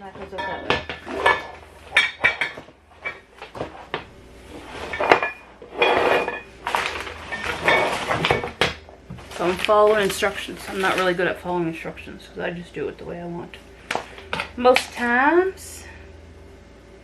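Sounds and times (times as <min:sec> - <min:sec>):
scraping and rustling: 0:00.1 - 0:11.4.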